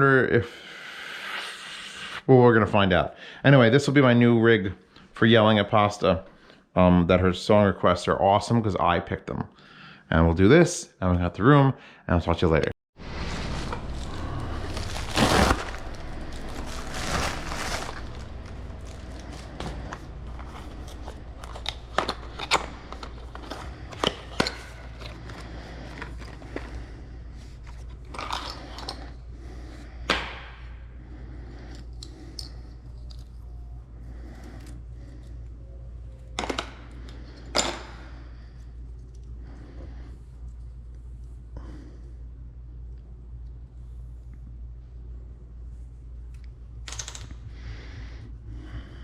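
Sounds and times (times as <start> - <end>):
steady low hum: 12.6 - 49.0
scraping or crinkling: 13.0 - 29.0.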